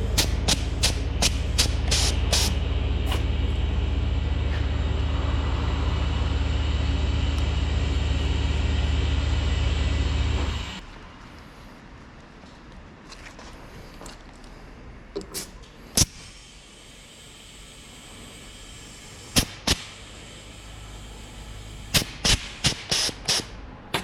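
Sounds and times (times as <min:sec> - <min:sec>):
mechanical drone with hiss: 0:00.0 - 0:10.8, 0:15.3 - 0:23.6.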